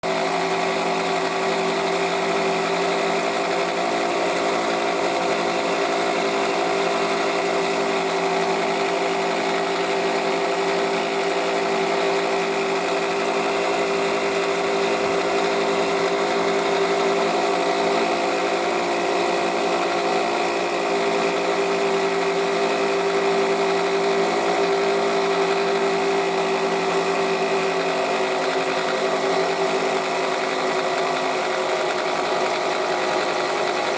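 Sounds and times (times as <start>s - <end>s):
engine idling with whine: 0.1s - 33.9s.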